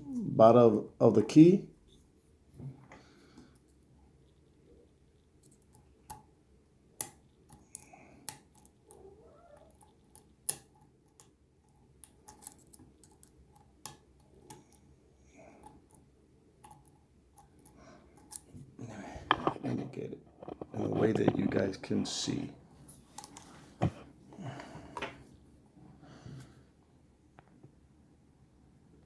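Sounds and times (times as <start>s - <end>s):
light metal scraping: 18.8s - 23.7s.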